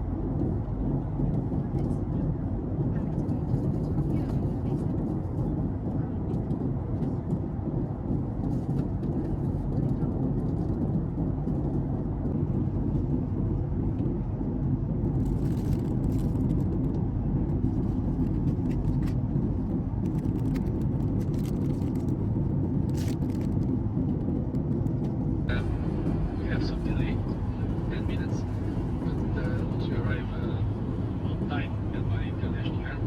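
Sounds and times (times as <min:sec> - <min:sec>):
airplane engine and airflow rumble: 0:00.0 - 0:33.0.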